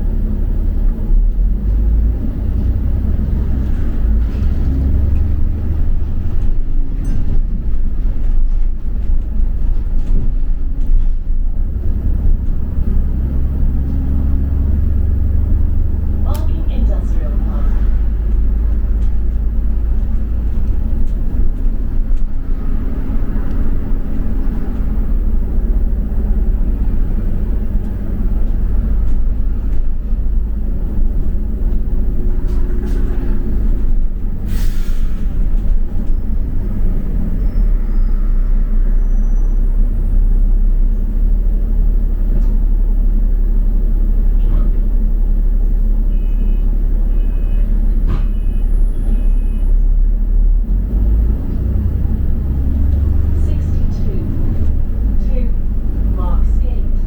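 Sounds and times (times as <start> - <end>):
bus engine and road rumble: 0.0 - 57.0
short hiss: 34.5 - 35.2
faint short beeps: 46.1 - 49.8.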